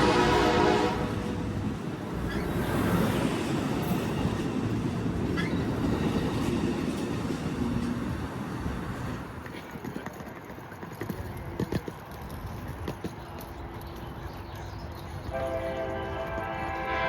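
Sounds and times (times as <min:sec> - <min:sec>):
train horn: 0:00.0 - 0:01.4, 0:15.3 - 0:17.0
train rumbling past on rails: 0:00.0 - 0:10.1, 0:14.5 - 0:17.0
faint wheel squeal: 0:02.2 - 0:02.6, 0:05.4 - 0:05.8.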